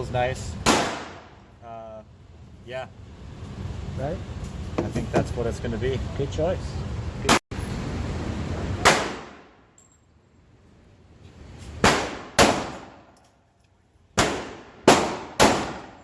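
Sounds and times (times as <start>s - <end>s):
pistol shots indoors: 0.6s - 1.4s, 11.8s - 13.1s, 14.2s - 16.0s.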